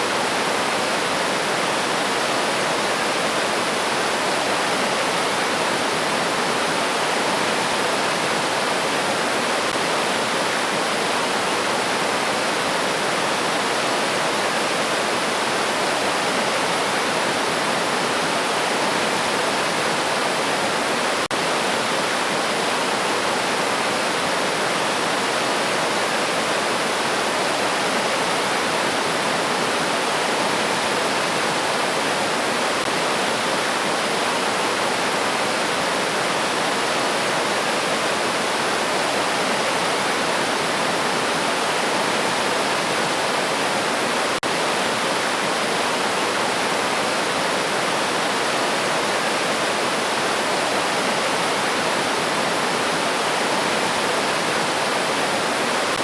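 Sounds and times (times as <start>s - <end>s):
river water rushing over rocks: 0.0s - 56.0s.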